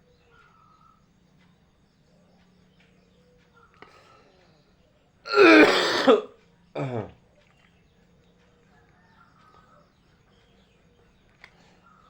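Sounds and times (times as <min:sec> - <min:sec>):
person vocalizing loudly: 0:05.3 - 0:06.2, 0:06.8 - 0:07.1.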